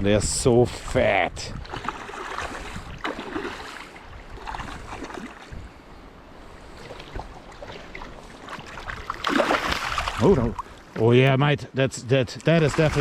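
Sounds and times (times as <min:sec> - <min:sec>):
wind buffeting microphone: 0:00.0 - 0:03.4, 0:04.0 - 0:06.0
river water rushing: 0:07.2 - 0:11.0.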